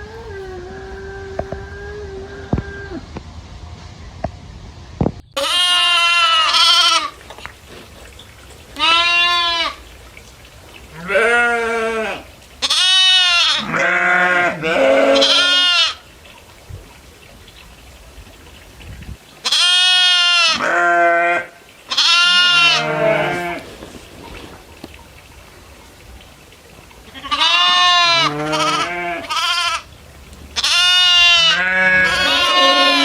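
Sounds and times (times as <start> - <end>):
goats bleating: 5.4 - 7.2, 8.8 - 9.8, 10.9 - 16.0, 19.5 - 23.7, 27.1 - 29.9, 30.6 - 33.0.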